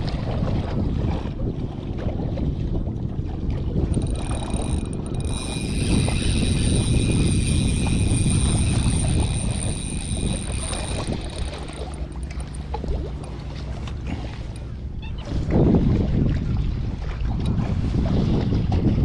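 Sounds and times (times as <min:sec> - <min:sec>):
wind buffeting microphone: 0:00.0 - 0:19.0
thin steady high whine: 0:03.9 - 0:15.0
low steady hum: 0:03.9 - 0:16.0.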